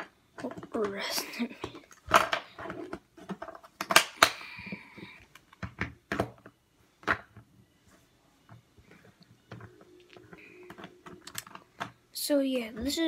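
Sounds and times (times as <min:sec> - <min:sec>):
puzzle cube plastic clicks: 0:01.6 - 0:07.3.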